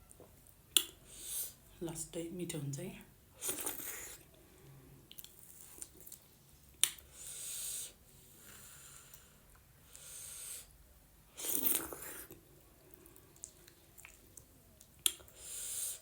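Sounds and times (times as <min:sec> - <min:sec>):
noisy breathy air draws: 0:07.1 - 0:10.8, 0:15.3 - 0:16.0.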